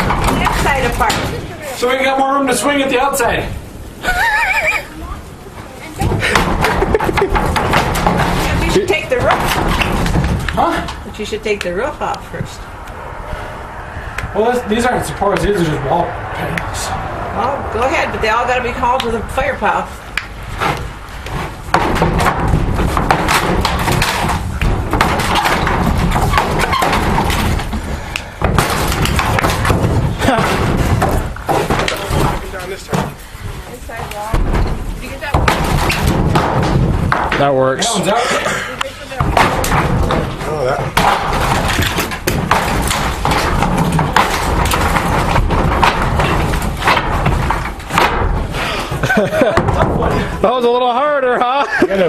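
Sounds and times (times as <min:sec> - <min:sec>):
wooden boards thumping and knocking: 0:00.0 - 0:01.6, 0:06.0 - 0:12.5, 0:18.8 - 0:38.0, 0:39.0 - 0:50.5.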